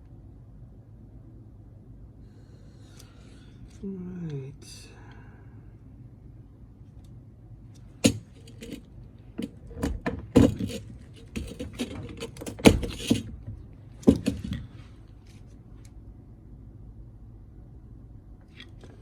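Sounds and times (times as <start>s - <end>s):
metallic clatter of tools: 8.0s - 8.9s.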